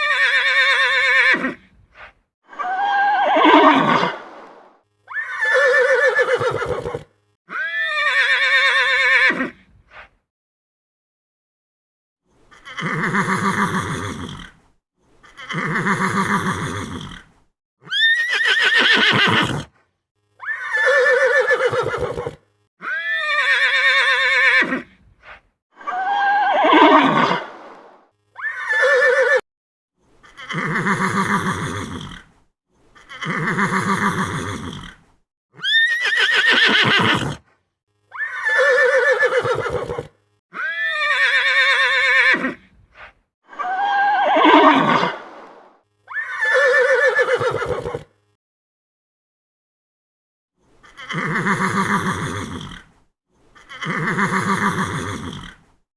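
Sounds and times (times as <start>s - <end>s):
horse neighing: 0.0s - 1.6s, 2.5s - 9.6s, 12.5s - 14.6s, 15.3s - 19.7s, 20.4s - 24.9s, 25.8s - 29.4s, 30.2s - 32.3s, 33.0s - 35.0s, 35.6s - 37.4s, 38.1s - 42.6s, 43.5s - 48.1s, 50.9s - 52.9s, 53.6s - 55.6s.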